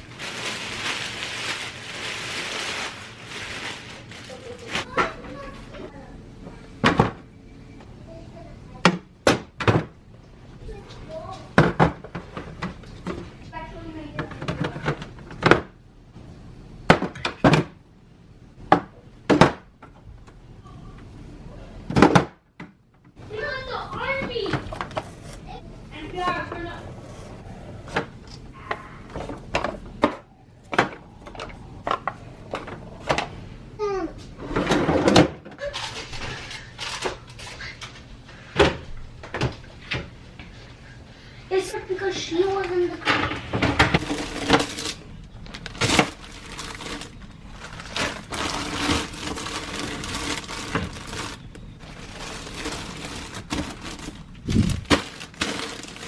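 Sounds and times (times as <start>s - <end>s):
groceries rustling: 0.0s - 5.9s, 23.2s - 38.5s, 43.7s - 56.0s
cupboard doors knocking and clicking: 8.8s - 9.9s.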